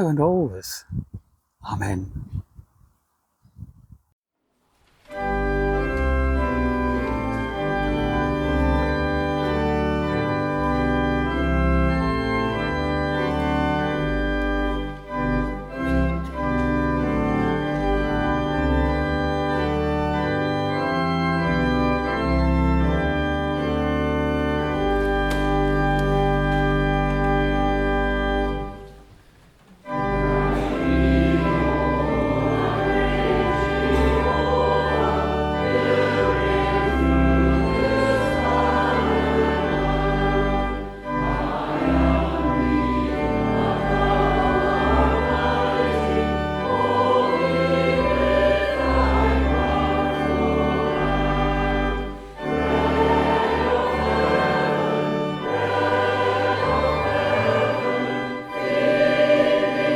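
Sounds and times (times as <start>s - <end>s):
choir singing a hymn with organ: 5.1s - 28.9s, 29.8s - 59.9s
organ chord: 5.1s - 29.1s, 29.8s - 59.9s.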